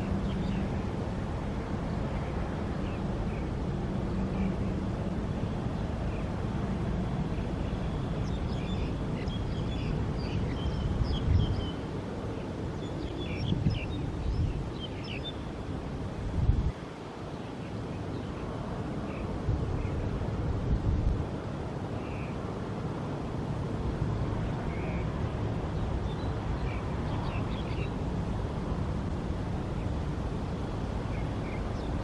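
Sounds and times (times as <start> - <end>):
wind buffeting microphone: 0.0 - 32.0
small birds chirping: 7.3 - 15.5, 24.4 - 28.0, 30.8 - 32.0.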